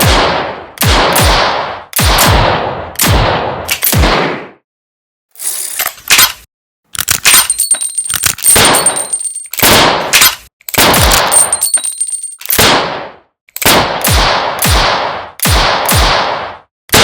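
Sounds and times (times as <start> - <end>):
revolver gunshots: 0.0 - 4.6, 8.5 - 11.6, 12.5 - 17.0.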